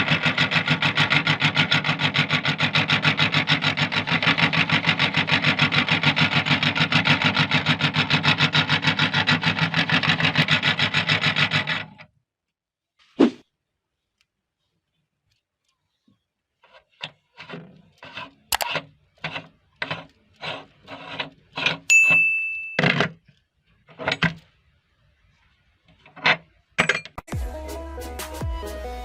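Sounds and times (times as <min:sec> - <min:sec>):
meat grinder crunching biscuits: 0:00.0 - 0:12.0.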